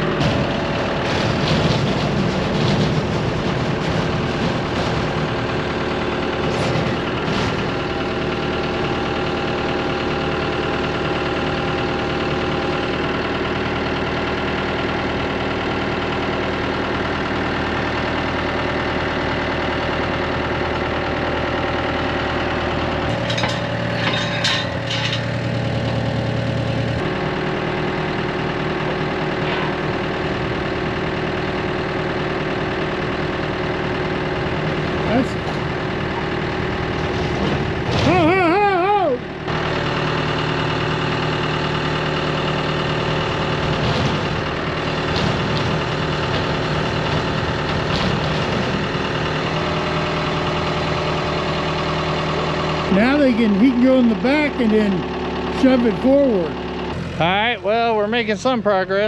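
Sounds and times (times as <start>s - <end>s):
tractor engine running: 0.0s - 59.0s
metallic clanks: 23.0s - 27.1s.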